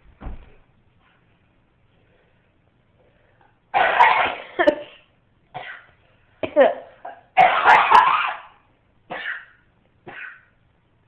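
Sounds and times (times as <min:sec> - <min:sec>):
low thump: 0:00.2 - 0:00.6
baby coughing: 0:03.8 - 0:04.9, 0:05.6 - 0:08.5, 0:09.1 - 0:10.5.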